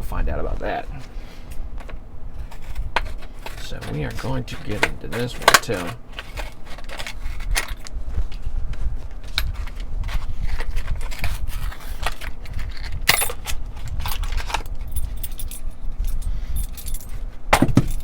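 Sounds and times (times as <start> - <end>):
keys jingling: 9.3 - 18.0.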